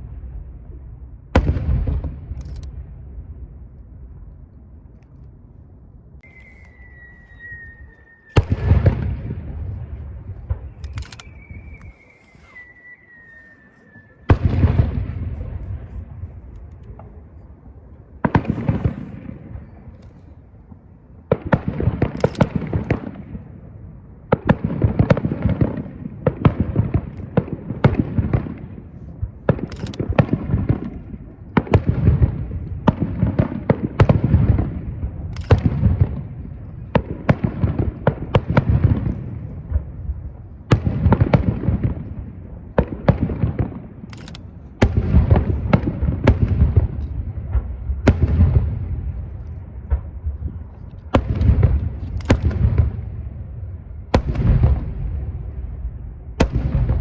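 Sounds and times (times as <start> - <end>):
fireworks bursting: 6.2 - 17.3, 18.2 - 19.9, 24.3 - 53.4.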